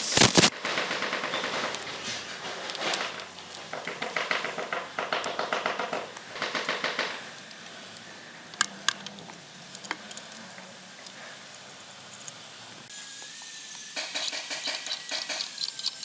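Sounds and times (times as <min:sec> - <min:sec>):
sharp clicks: 0:00.0 - 0:01.8
rapid mechanical rattling: 0:00.0 - 0:07.6, 0:14.0 - 0:16.0.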